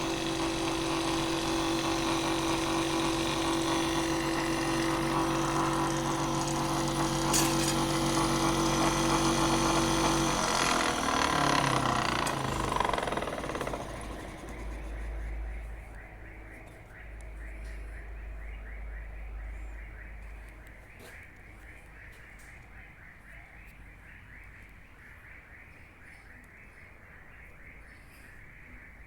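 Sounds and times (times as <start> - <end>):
motor spinning down: 0.0 - 16.6
drill press motor humming: 0.0 - 16.7.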